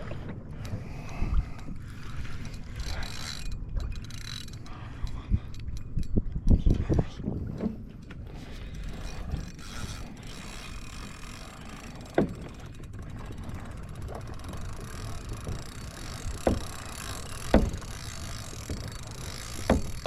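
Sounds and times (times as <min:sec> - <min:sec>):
water and wind rushing: 0:00.0 - 0:20.0
sharp knocks against hull: 0:16.4 - 0:16.8, 0:17.5 - 0:18.0, 0:19.6 - 0:20.0.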